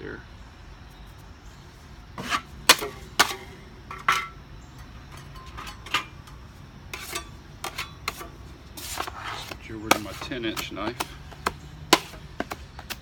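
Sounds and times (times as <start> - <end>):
knife scraping a metal pan: 2.2 - 4.4, 5.1 - 11.1, 11.9 - 12.5.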